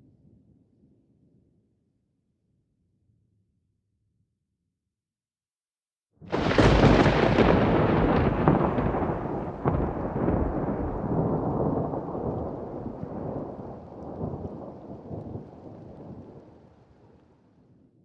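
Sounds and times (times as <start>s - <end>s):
sharp thunder cracks: 6.3s - 16.4s
rolling thunder: 6.3s - 16.6s.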